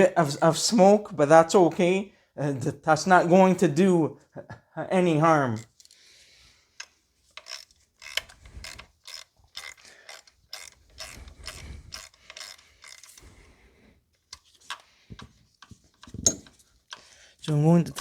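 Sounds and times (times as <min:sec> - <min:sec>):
hand ratchet clicking: 0:06.8 - 0:13.5, 0:14.3 - 0:18.0.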